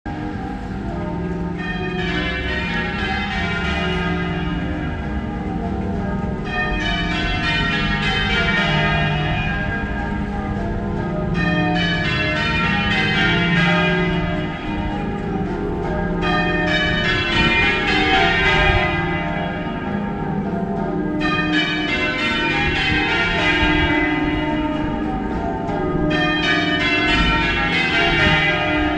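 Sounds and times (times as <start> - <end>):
church bells ringing: 0.1 - 28.9.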